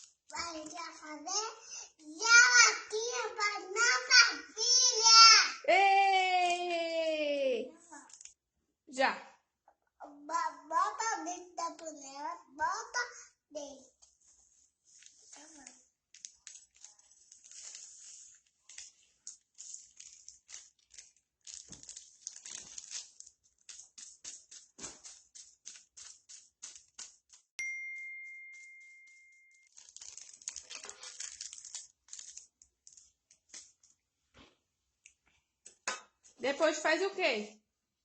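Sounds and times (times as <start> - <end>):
packet crinkling and tearing: 0.0 - 0.8, 8.1 - 8.4, 14.9 - 27.5, 29.7 - 34.0
metallic ding: 27.6 - 29.5.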